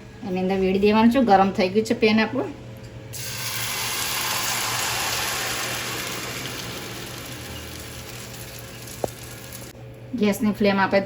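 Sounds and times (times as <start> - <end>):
batter sizzling in a hot pan: 3.2 - 9.7.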